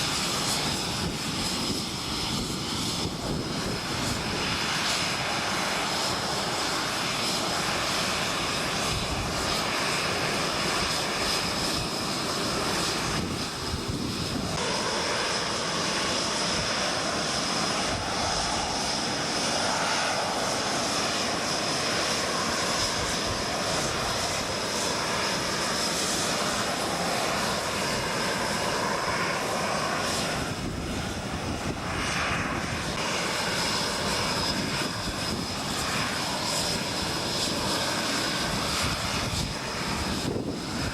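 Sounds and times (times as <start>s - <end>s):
jet engines running: 0.0s - 40.9s.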